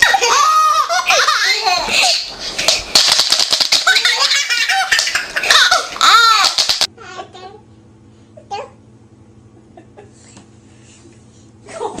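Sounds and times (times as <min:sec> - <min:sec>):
baby laughing: 0:00.0 - 0:06.9.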